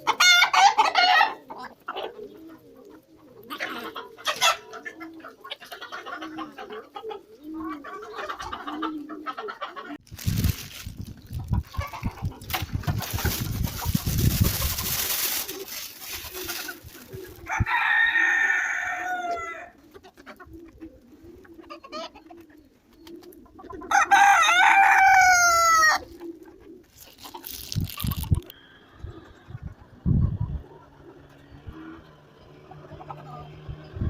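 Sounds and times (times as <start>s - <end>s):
rooster crowing: 17.5s - 19.8s, 23.9s - 26.0s.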